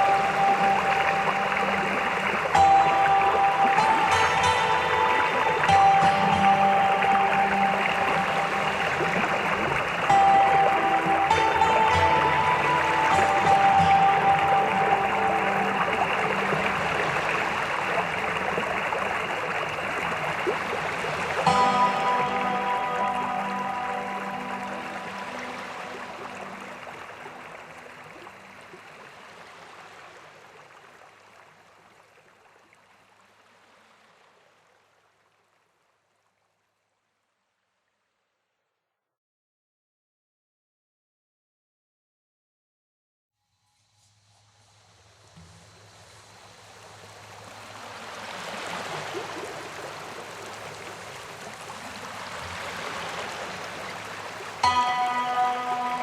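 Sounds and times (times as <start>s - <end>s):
soft background music: 0.0s - 29.4s, 44.6s - 56.0s
waterfall rushing: 0.0s - 31.2s, 45.0s - 56.0s.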